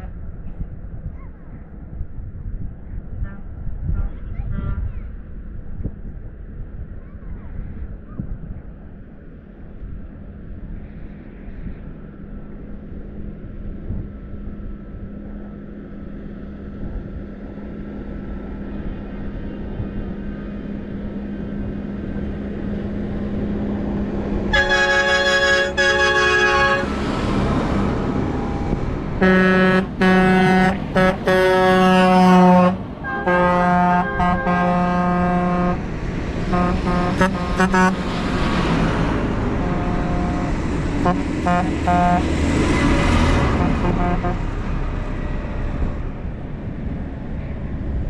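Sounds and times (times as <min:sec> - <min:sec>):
tractor engines: 0:05.1 - 0:48.0
vehicle horn long blast: 0:24.5 - 0:27.0, 0:29.2 - 0:35.8, 0:36.5 - 0:38.0, 0:39.6 - 0:42.2, 0:43.6 - 0:44.4
short horn toots: 0:24.6 - 0:26.9.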